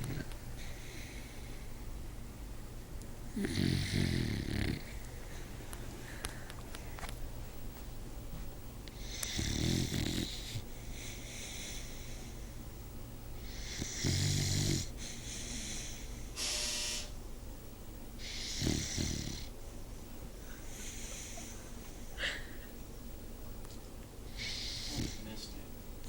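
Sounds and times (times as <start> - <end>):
dog snoring: 3.3 - 5.0, 8.9 - 12.4, 13.4 - 16.1, 18.2 - 19.5, 24.3 - 25.4.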